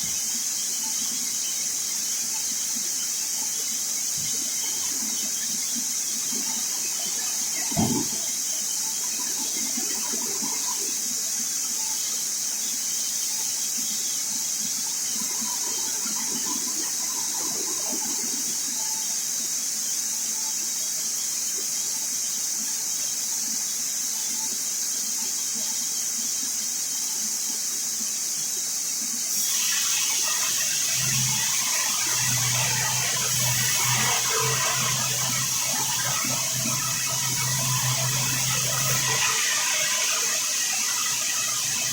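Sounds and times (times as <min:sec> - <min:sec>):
band saw hiss and squeal: 0:29.3 - 0:41.9
low hum: 0:30.4 - 0:41.9.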